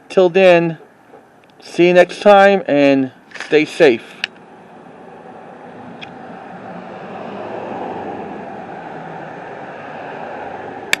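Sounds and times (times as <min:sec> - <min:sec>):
passing vehicle rushing: 0:03.6 - 0:11.0.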